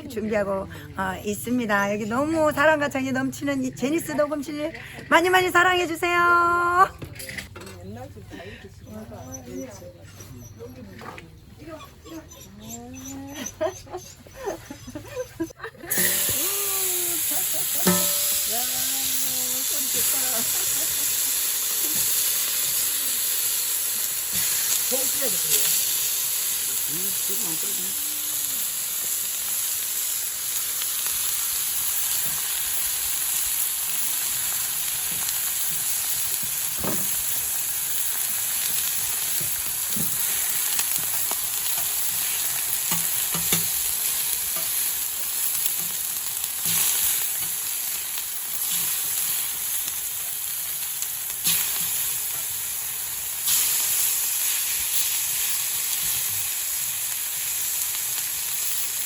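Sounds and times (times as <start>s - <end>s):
meat sizzling on a griddle: 15.9s - 59.0s.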